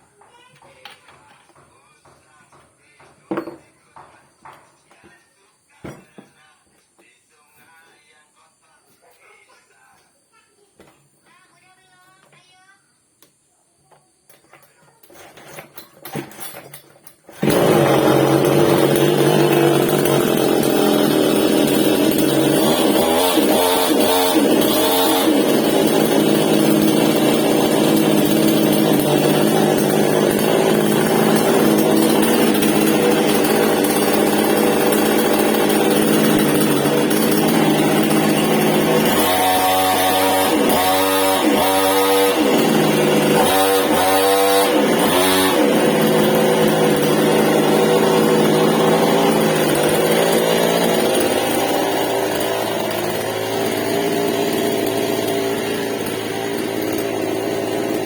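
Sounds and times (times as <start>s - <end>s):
chainsaw engine revving: 15.1s - 16.7s, 17.3s - 58.0s.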